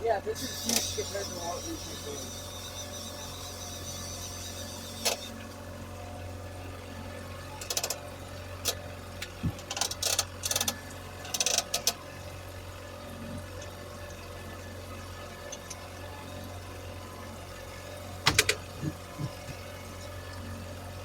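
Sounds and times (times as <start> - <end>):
fishing reel clicking: 0.4 - 5.4
steady low hum: 18.0 - 21.0.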